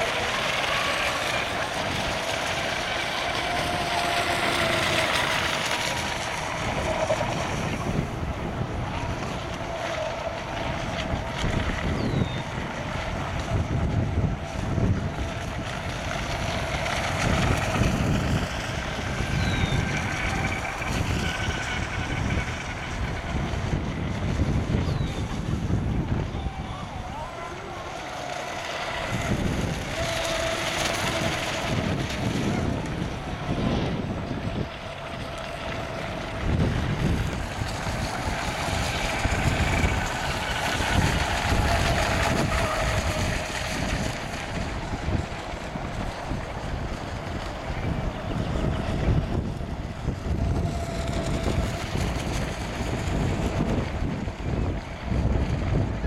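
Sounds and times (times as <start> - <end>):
model boat motors whining: 0.0 - 56.0
wind buffeting microphone: 0.0 - 56.0.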